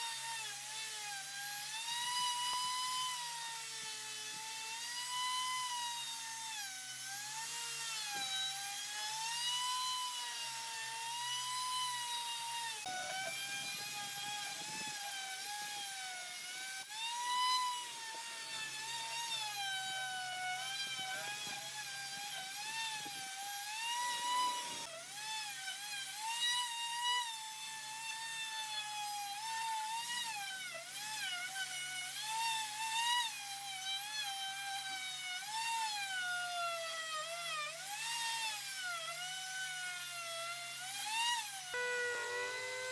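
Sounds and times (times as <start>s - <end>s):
power tool high whine: 0.0s - 42.9s
rough grinding noise: 12.8s - 16.0s, 17.2s - 24.9s.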